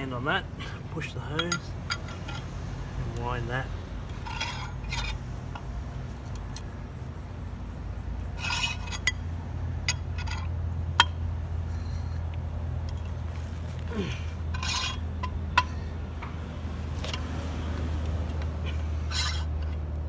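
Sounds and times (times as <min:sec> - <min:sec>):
steady low hum: 0:00.0 - 0:20.0
short metal scrapes: 0:04.1 - 0:05.3, 0:08.3 - 0:09.2, 0:18.7 - 0:19.8.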